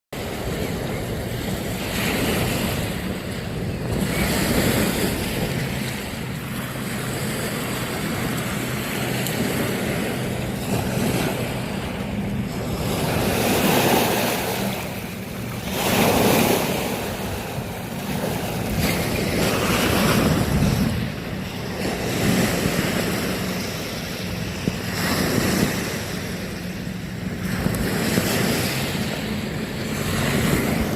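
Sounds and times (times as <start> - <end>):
waves breaking on a beach: 0.2 - 30.9
wind buffeting microphone: 0.2 - 30.9.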